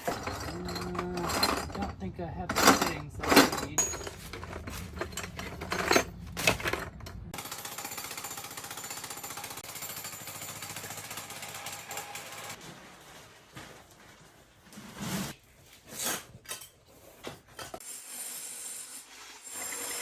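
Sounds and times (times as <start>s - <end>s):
power tool hammering rattle: 0.0s - 12.6s.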